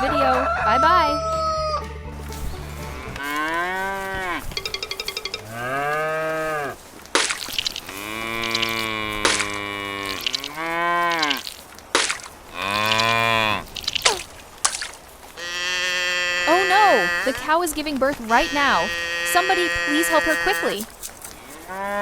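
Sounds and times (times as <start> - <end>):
cows mooing: 2.4 - 6.8, 7.8 - 11.5, 12.5 - 13.8, 15.4 - 20.9.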